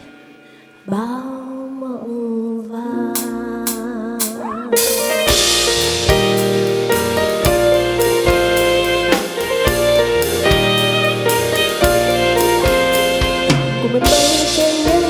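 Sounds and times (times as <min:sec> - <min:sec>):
keyboard chords: 0:03.0 - 0:15.0
drum kit beat: 0:03.2 - 0:15.0
cymbal crash: 0:04.8 - 0:15.0.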